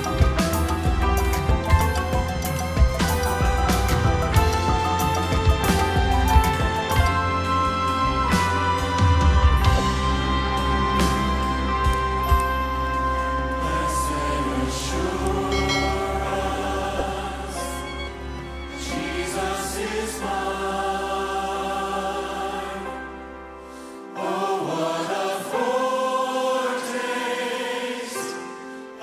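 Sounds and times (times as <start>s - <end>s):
low bass: 0.0s - 18.2s
instruments playing: 0.0s - 19.6s
choir singing held notes: 0.0s - 29.0s.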